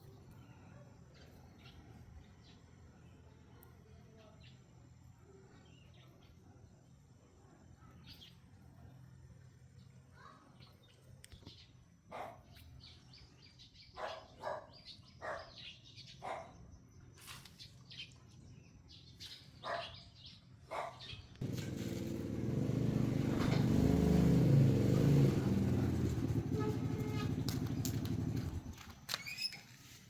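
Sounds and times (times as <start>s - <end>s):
motor running loudly: 21.4s - 28.9s.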